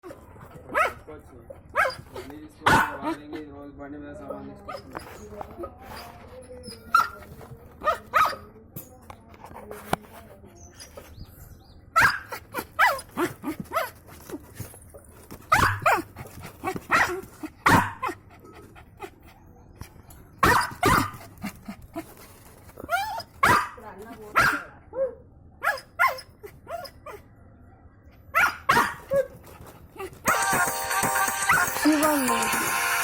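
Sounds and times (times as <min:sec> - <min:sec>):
dog barking: 0:00.7 - 0:01.0, 0:01.8 - 0:02.0, 0:02.6 - 0:03.1, 0:12.0 - 0:13.0, 0:15.5 - 0:16.1, 0:16.9 - 0:18.2, 0:20.4 - 0:21.2, 0:23.4 - 0:27.2, 0:28.3 - 0:29.4.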